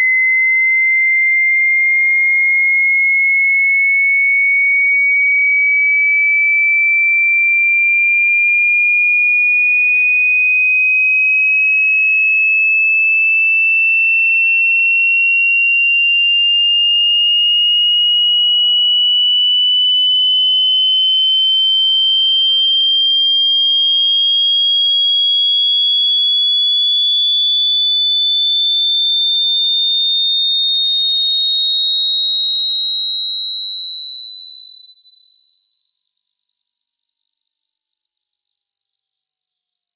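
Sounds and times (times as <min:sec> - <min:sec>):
rising sine-wave test tone: 0:00.0 - 0:02.4, 0:16.1 - 0:39.9.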